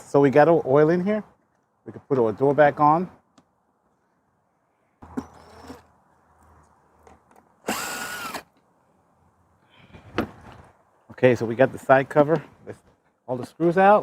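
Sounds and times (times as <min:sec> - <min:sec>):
power drill driving screw: 0:05.1 - 0:05.9, 0:07.6 - 0:08.5.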